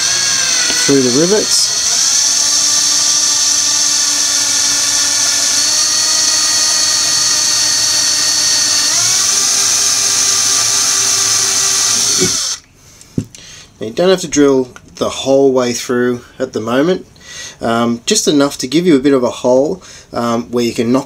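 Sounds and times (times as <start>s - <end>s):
electric drill drilling: 0.0s - 12.7s.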